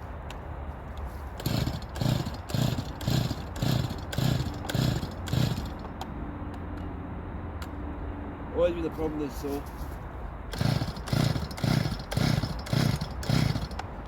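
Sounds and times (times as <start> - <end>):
chainsaw recoil starter pulls: 1.4 - 5.8, 10.5 - 13.9
engine turning over: 1.4 - 5.8, 10.5 - 13.8.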